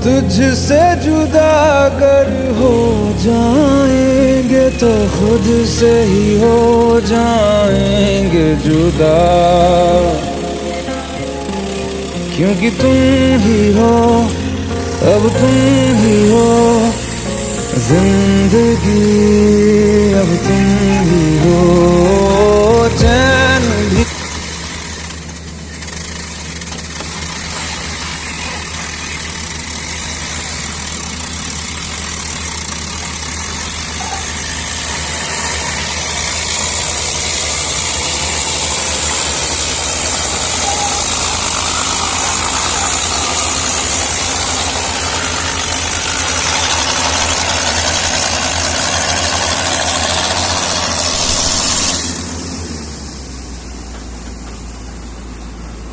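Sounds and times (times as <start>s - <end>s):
excavator engine running: 0.0s - 55.9s
hiss: 24.0s - 55.8s.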